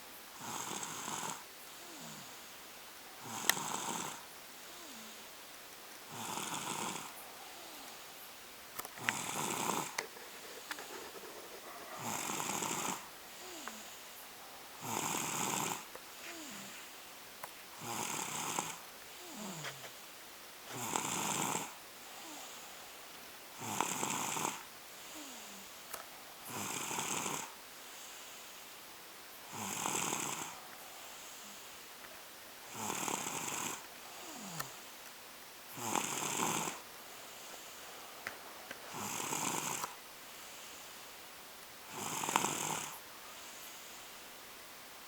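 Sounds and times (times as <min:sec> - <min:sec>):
toddler snoring: 0:00.4 - 0:02.5, 0:03.2 - 0:05.3, 0:06.1 - 0:08.1, 0:09.0 - 0:14.2, 0:14.8 - 0:16.9, 0:17.8 - 0:20.0, 0:20.7 - 0:22.8, 0:23.6 - 0:25.9, 0:26.5 - 0:28.6, 0:29.5 - 0:31.8, 0:32.7 - 0:34.9, 0:35.7 - 0:37.9, 0:38.9 - 0:41.0, 0:41.9 - 0:44.2
soft breathing: 0:07.0 - 0:08.4, 0:09.0 - 0:17.2, 0:18.7 - 0:20.1, 0:30.5 - 0:32.2, 0:36.7 - 0:41.3, 0:42.8 - 0:44.4.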